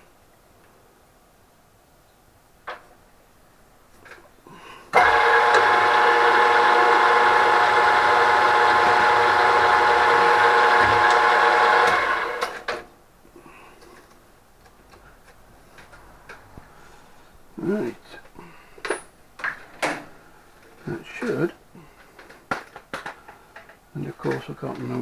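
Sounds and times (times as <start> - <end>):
machine spindle whining: 4.9 - 12.8.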